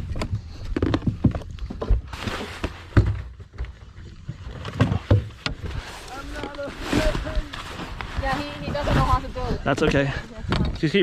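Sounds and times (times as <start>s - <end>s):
knocks and thumps in boat: 0.0s - 7.6s.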